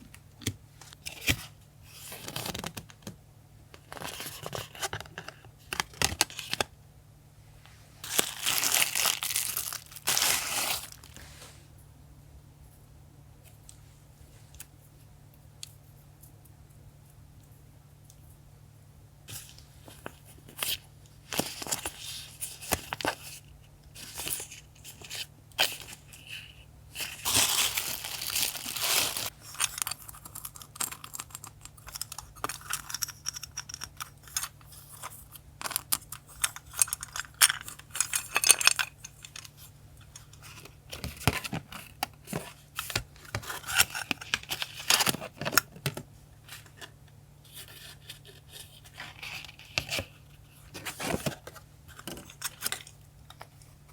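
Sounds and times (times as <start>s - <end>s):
paper tearing and crinkling: 8.1s - 11.2s, 27.0s - 29.3s.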